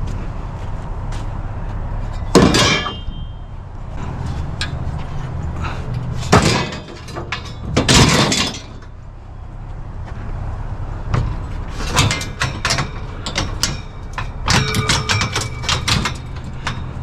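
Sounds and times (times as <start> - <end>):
steady low rumble: 0.0 - 17.0
metal bed frame parts clanking: 2.0 - 3.5, 4.2 - 9.0, 11.1 - 17.0.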